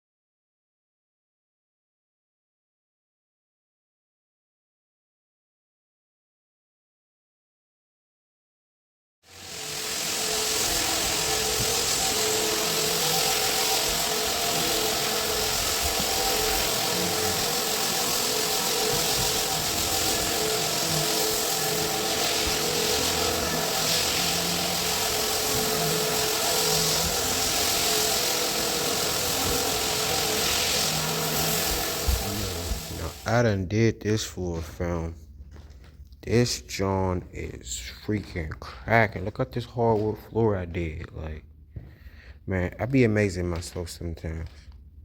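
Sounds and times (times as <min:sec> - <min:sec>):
motor-driven machine running: 0:09.3 - 0:33.2.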